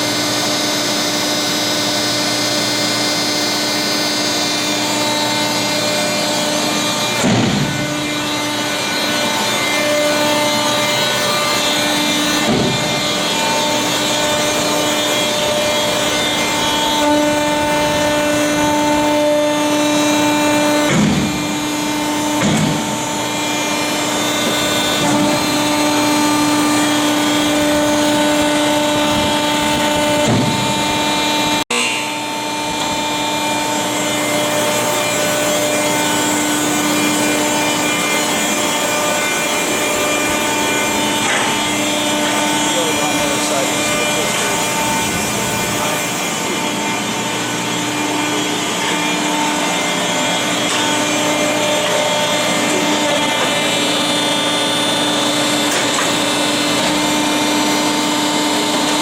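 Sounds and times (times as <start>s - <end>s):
baler motor humming: 0.0s - 59.0s
grinding rubbing noise: 32.7s - 57.2s.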